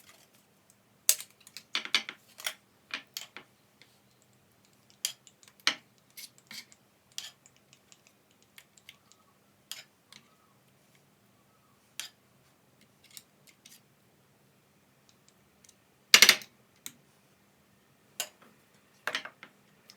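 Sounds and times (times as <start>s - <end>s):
small objects clicking and tapping: 0.0s - 10.4s, 18.2s - 19.9s.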